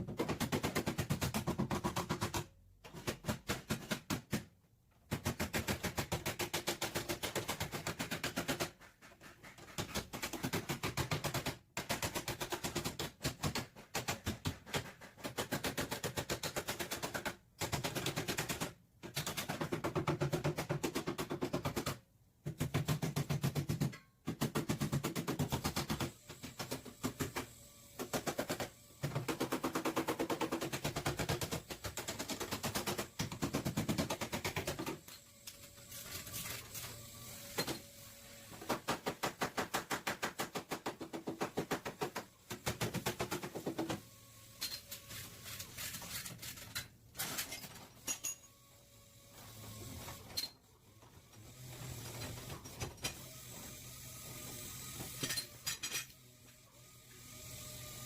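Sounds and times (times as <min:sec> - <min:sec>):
power tool hammering sheet metal: 0:22.6 - 0:35.2, 0:35.9 - 0:44.0.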